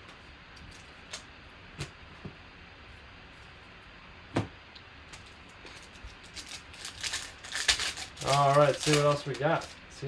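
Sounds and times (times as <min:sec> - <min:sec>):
trading cards handled: 0:05.2 - 0:09.8.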